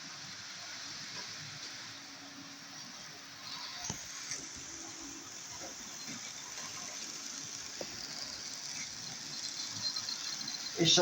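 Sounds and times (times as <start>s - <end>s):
model train motor whirring: 3.3s - 11.0s.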